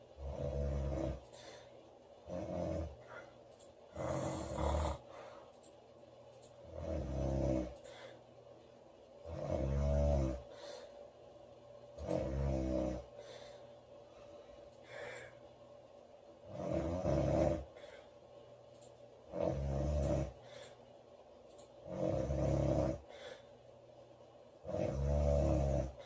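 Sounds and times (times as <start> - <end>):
woman snoring loudly: 0.2 - 1.2, 3.9 - 5.1, 6.6 - 7.8, 9.2 - 10.5, 12.0 - 13.1, 16.5 - 17.7, 19.3 - 20.4, 21.8 - 23.1, 24.6 - 26.0
faint breath: 1.2 - 1.9, 5.0 - 5.6, 7.8 - 8.3, 10.4 - 11.1, 13.1 - 15.6, 17.7 - 18.3, 20.3 - 21.0, 23.0 - 23.7.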